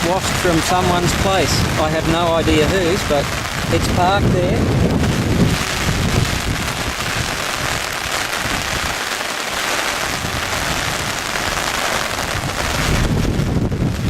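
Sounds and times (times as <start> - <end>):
low rumble: 0.0 - 7.8
heavy rain hissing: 0.0 - 14.0.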